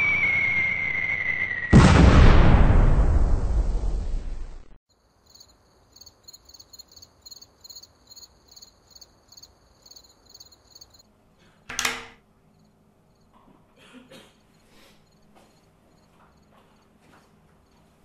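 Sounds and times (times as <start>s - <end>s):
short loud noise burst: 0.0s - 4.5s
loud boom: 0.0s - 4.8s
crickets chirping: 4.9s - 11.1s, 12.5s - 13.3s, 14.4s - 17.0s, 17.6s - 18.0s.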